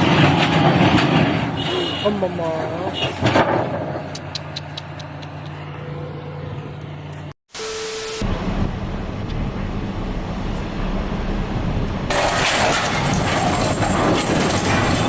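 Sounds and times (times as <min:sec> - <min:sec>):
engine running low hum: 0:03.6 - 0:15.0.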